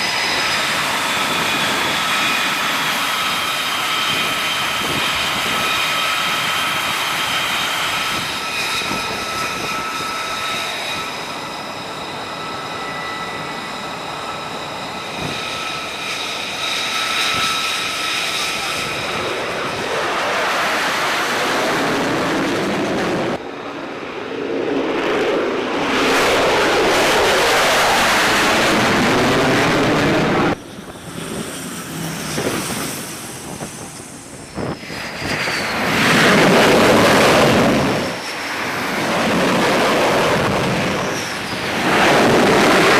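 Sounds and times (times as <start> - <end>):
jet engine high whine: 0.0 - 42.9
loud rushing jet noise: 0.0 - 42.9.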